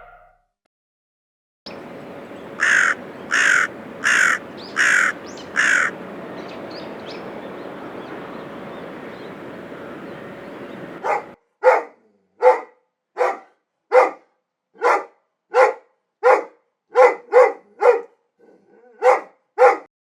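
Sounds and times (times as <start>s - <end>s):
bird's harsh call: 1.7s - 11.4s
outdoor background hiss: 1.7s - 11.4s.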